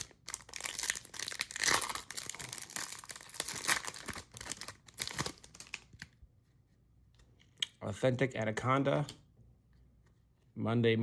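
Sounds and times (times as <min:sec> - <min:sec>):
foil wrapper tearing and crinkling: 0:00.0 - 0:06.0.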